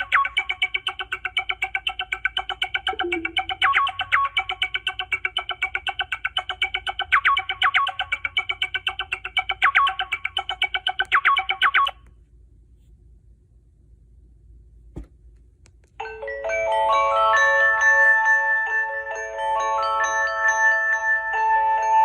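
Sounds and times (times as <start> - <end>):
phone ringtone tune: 0.0 - 7.1, 16.0 - 22.0
faint low hum: 11.1 - 16.0.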